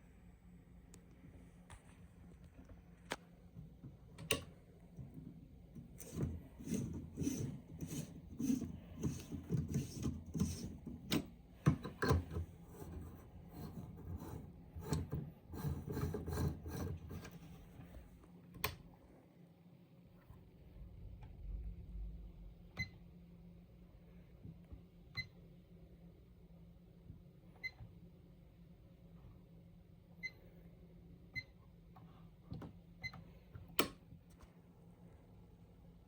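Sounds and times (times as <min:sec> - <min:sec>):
objects scraping and rubbing: 0:05.8 - 0:18.1.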